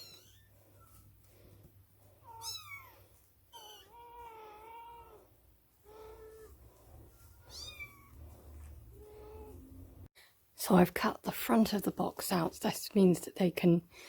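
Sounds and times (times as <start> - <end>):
kittens meowing: 0.0 - 1.0, 2.2 - 6.6, 7.3 - 9.8.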